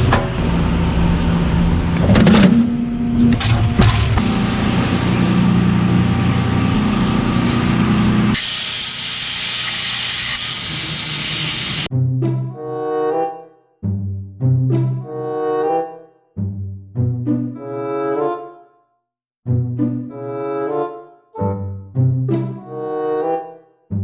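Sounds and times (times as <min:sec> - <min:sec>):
machine running hum: 0:00.0 - 0:11.9
steady hiss: 0:08.4 - 0:11.9.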